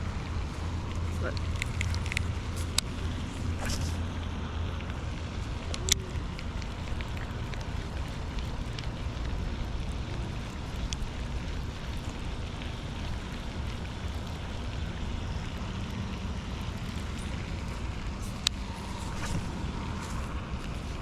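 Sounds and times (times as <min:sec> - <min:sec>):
faint clicks: 0:05.6 - 0:09.0
wind buffeting microphone: 0:16.6 - 0:21.0.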